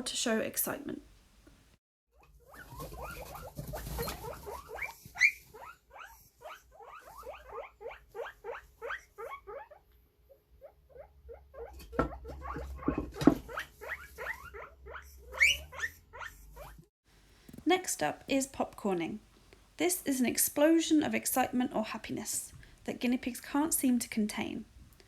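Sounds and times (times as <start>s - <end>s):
guinea pigs squealing: 2.2s - 9.9s, 10.6s - 16.8s
knocks: 11.9s - 13.5s.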